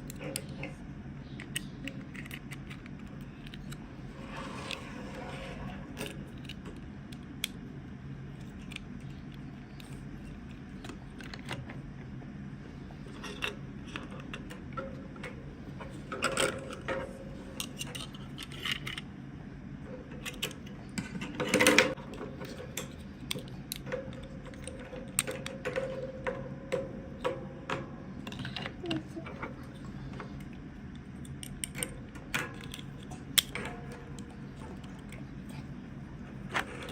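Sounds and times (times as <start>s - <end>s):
steady low hum: 0.0s - 36.9s
plastic toy pieces clicking and rattling: 1.4s - 3.8s, 5.9s - 7.7s, 8.3s - 11.6s, 17.6s - 19.1s, 20.2s - 26.4s, 28.2s - 35.6s.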